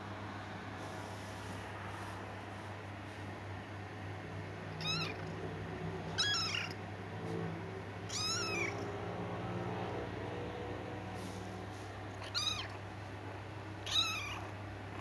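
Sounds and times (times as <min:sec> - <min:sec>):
kitten meowing: 0:04.8 - 0:05.4, 0:06.2 - 0:06.8, 0:08.1 - 0:08.9, 0:12.2 - 0:12.8, 0:13.8 - 0:14.5.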